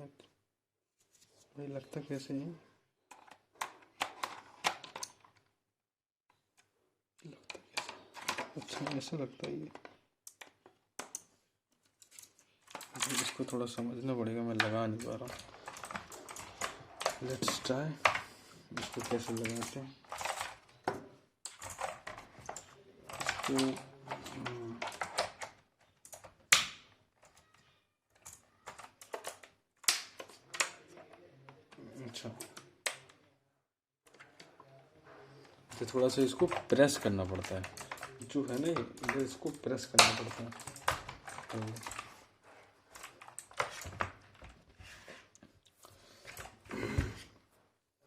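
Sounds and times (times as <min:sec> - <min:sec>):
plastic keyboard clicks and knocks: 0:03.1 - 0:05.5, 0:06.6 - 0:11.3, 0:12.0 - 0:33.2, 0:35.6 - 0:44.7.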